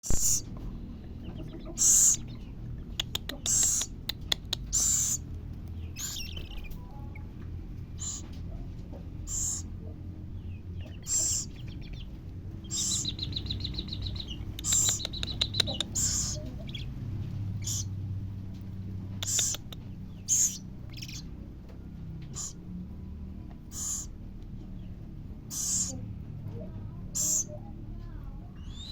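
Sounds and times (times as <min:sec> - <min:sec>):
owlet raspy hissing calls: 0:00.0 - 0:00.4, 0:01.8 - 0:02.2, 0:03.4 - 0:03.9, 0:04.7 - 0:05.2, 0:08.0 - 0:08.3, 0:09.2 - 0:09.7, 0:11.0 - 0:11.5, 0:12.7 - 0:13.2, 0:14.6 - 0:16.7, 0:17.6 - 0:17.9, 0:19.2 - 0:19.7, 0:20.3 - 0:21.2, 0:22.3 - 0:22.6, 0:23.7 - 0:24.2, 0:25.5 - 0:26.0, 0:27.1 - 0:27.5
sharp clicks: 0:02.9 - 0:06.8, 0:13.1 - 0:16.4, 0:19.2 - 0:20.0.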